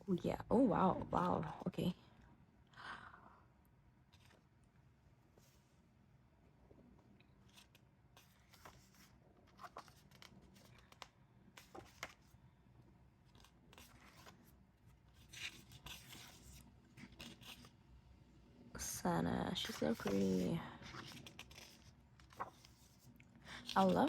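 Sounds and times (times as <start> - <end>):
paper pages rustling: 4.1 - 4.4, 7.4 - 12.4, 13.2 - 17.7, 19.6 - 24.0.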